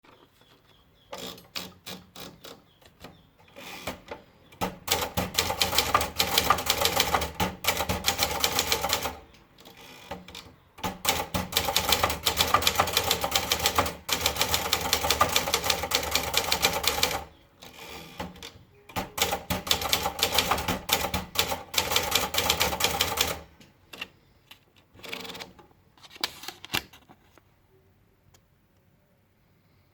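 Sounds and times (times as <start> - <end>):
manual typewriter typing: 1.1 - 2.6, 3.6 - 23.5, 25.0 - 25.6.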